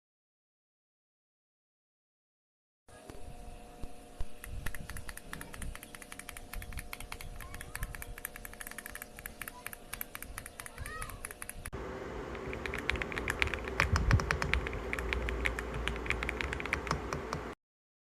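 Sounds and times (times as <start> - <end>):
faint steady hum: 2.9 - 17.6
mechanical keyboard typing: 4.4 - 17.6.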